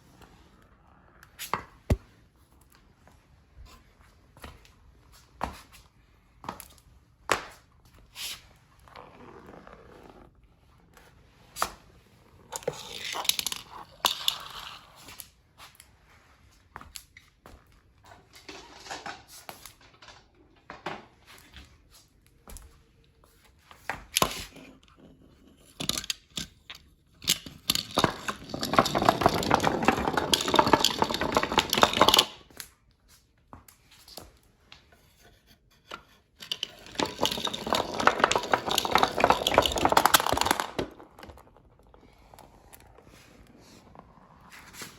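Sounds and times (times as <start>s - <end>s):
marbles rattling down wooden run: 12.6s - 14.8s, 18.4s - 20.3s, 25.8s - 26.6s, 27.2s - 32.4s, 36.4s - 41.6s.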